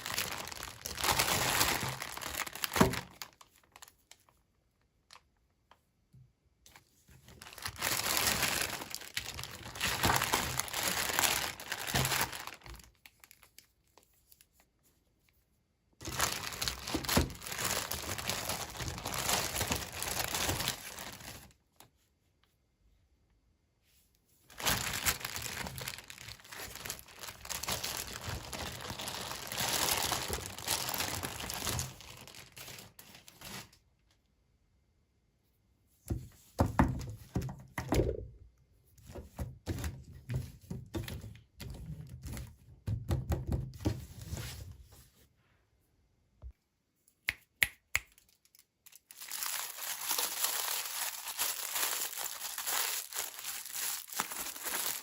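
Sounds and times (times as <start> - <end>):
packaging crinkling and tearing: 0.0 - 5.2, 7.2 - 14.1, 16.0 - 21.6, 24.5 - 33.8, 48.1 - 55.0.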